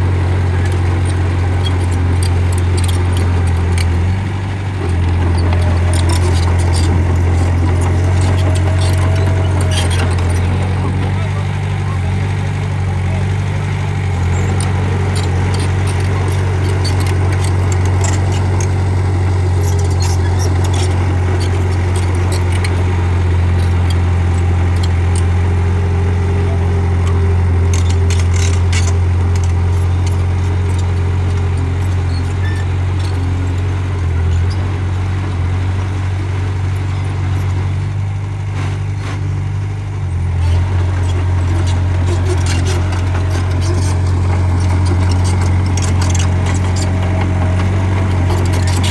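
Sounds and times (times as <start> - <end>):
bulldozer diesel engine running: 0.0 - 48.9
metallic clanks and rattles: 0.6 - 11.3, 14.4 - 25.6, 26.6 - 34.6, 40.4 - 48.9.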